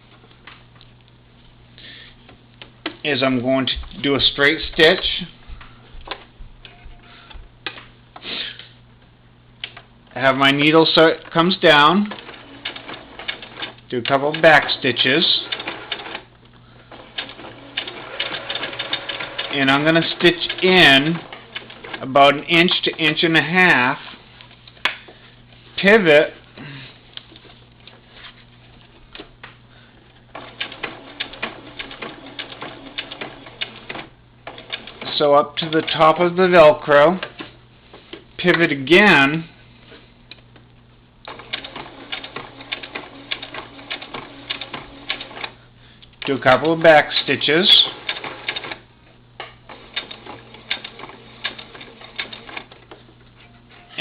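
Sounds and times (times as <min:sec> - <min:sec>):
sewing machine low hum: 0:10.5 - 0:23.0, 0:26.2 - 0:37.6, 0:41.2 - 0:45.7, 0:46.3 - 0:54.0
sewing machine needle clicking: 0:17.2 - 0:19.5.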